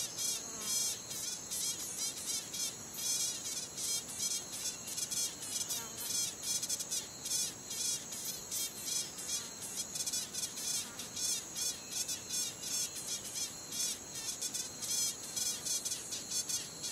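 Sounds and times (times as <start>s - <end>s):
insect buzzing chirps: 0.0s - 16.9s.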